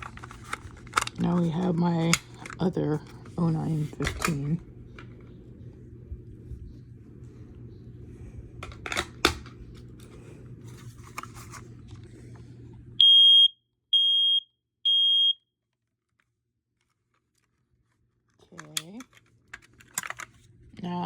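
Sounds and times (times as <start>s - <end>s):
smoke alarm beeps: 13.0s - 15.4s
handling clicks and knocks: 18.4s - 20.4s.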